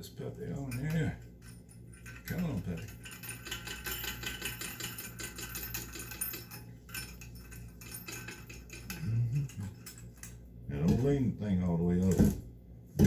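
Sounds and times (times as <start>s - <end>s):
metallic clicks and rattling: 0.7s - 10.4s.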